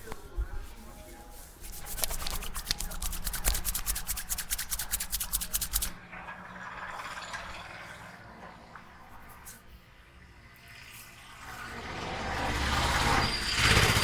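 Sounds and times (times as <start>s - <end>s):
hands rubbing oiled hair: 0.0s - 6.0s.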